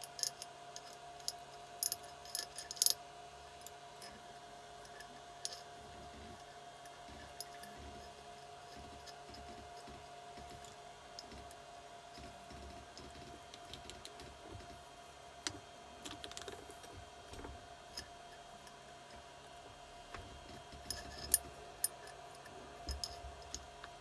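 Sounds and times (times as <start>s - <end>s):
small metal parts clicking: 0.0s - 3.0s, 20.8s - 23.6s
faint steady hum: 0.0s - 24.0s.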